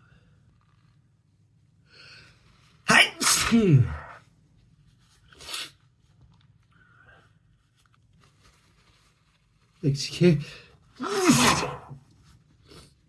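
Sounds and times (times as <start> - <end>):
person sneezing loudly: 2.9 - 4.2, 11.0 - 12.0
breathy intake: 11.0 - 12.0
person sniffling: 11.0 - 12.0.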